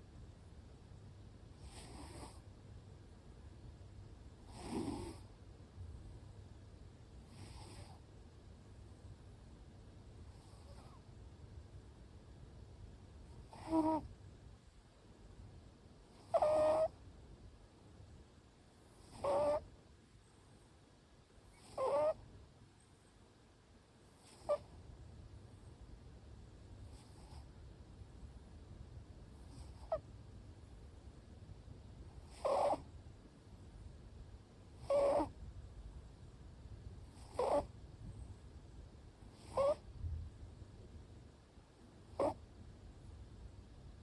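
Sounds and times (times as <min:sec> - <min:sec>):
cat snoring: 0:01.6 - 0:02.5, 0:04.4 - 0:05.3, 0:07.2 - 0:08.0, 0:10.3 - 0:11.0, 0:13.3 - 0:14.1, 0:16.0 - 0:17.0, 0:18.8 - 0:19.7, 0:21.4 - 0:22.2, 0:24.0 - 0:24.8, 0:26.8 - 0:27.5, 0:29.3 - 0:30.0, 0:32.2 - 0:32.9, 0:34.7 - 0:35.4, 0:37.0 - 0:37.7, 0:39.2 - 0:39.8, 0:42.1 - 0:42.4.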